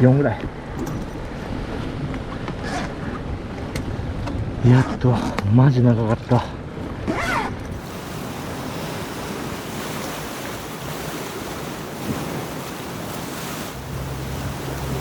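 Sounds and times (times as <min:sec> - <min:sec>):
wind buffeting microphone: 0:00.0 - 0:15.0
low steady hum: 0:07.7 - 0:15.0
waves washing against rocks: 0:07.7 - 0:15.0.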